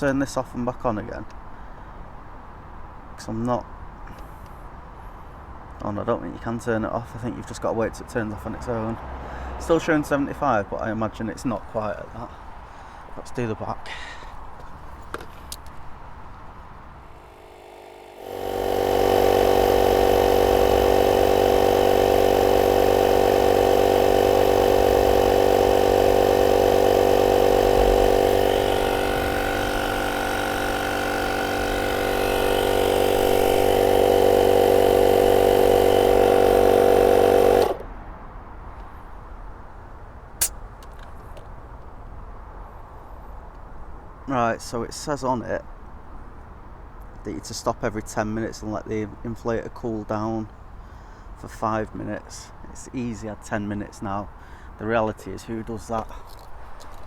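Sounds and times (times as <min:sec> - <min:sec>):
air compressor running: 0:17.0 - 0:37.9
sharp click: 0:40.4 - 0:41.1.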